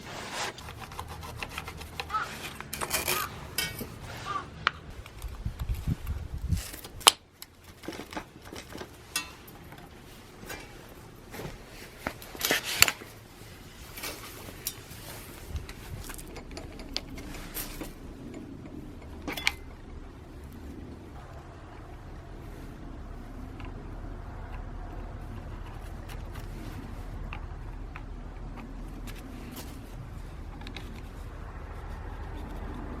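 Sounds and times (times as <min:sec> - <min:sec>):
tools and metal parts clinking: 0:00.6 - 0:04.1, 0:06.6 - 0:10.9, 0:13.9 - 0:19.9
metal clanks: 0:01.4 - 0:04.9, 0:07.8 - 0:10.9.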